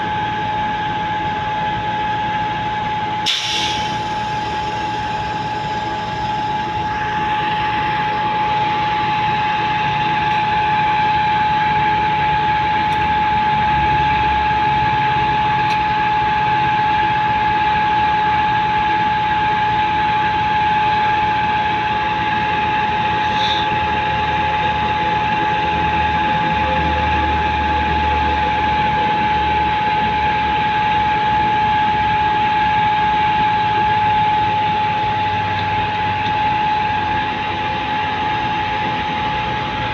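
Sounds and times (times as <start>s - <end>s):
high-pitched whine: 0.0s - 39.9s
truck engine and machinery: 0.0s - 39.9s.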